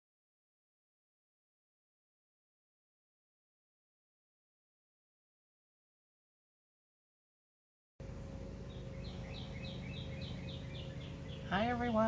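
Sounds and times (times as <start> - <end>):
steady low hum: 8.0 - 12.0
bird chirping: 8.1 - 12.0.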